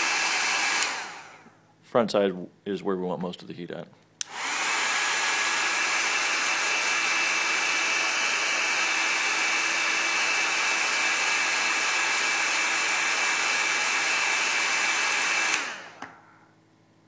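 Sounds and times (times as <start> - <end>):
hot-air blower whining: 0.0 - 1.6, 4.2 - 16.3.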